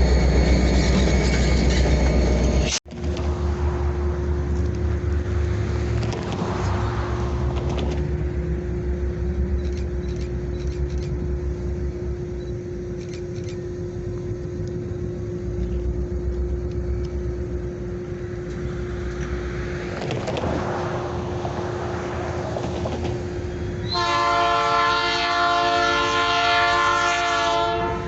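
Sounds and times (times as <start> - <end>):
diesel locomotives idling: 0.0 - 28.0
road vehicle passing: 2.9 - 12.2, 15.8 - 23.9.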